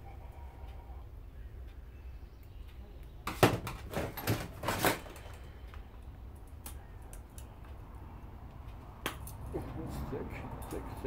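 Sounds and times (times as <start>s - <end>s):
metal and plastic parts knocking: 3.3s - 5.4s.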